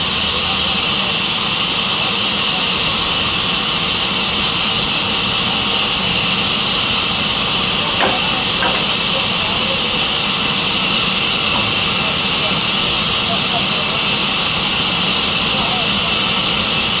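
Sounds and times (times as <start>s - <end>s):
saw machine hissing: 0.0s - 17.0s
faint knocks: 8.0s - 9.4s.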